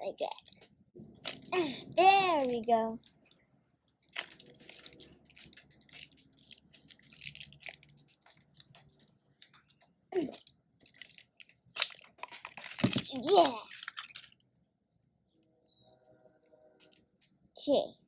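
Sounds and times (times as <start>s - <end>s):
plastic packaging crinkling: 0.2s - 3.4s, 4.0s - 14.4s.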